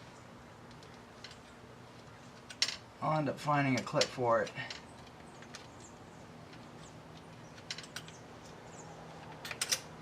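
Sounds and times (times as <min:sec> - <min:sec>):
metal parts and tools clicking: 0:03.8 - 0:08.6, 0:09.2 - 0:10.0.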